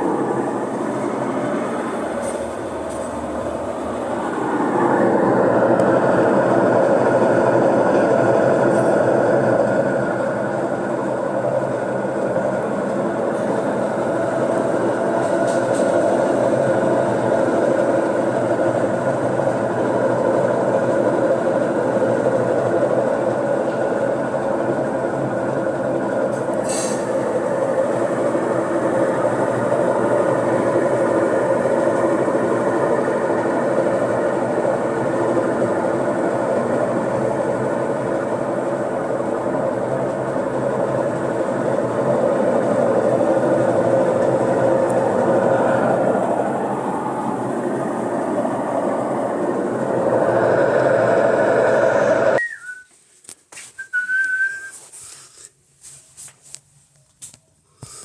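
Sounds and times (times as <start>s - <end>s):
washing machine spin noise: 0.0s - 55.0s
short high whistle-like tones: 52.4s - 53.0s, 53.7s - 54.9s.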